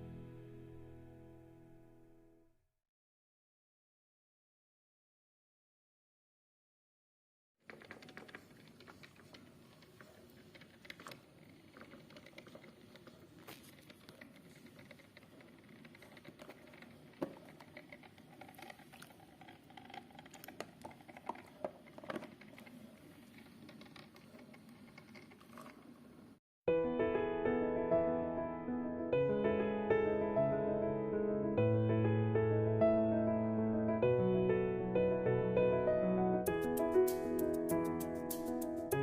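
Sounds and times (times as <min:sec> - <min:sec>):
coffee dripping into carafe: 0:13.4 - 0:22.7.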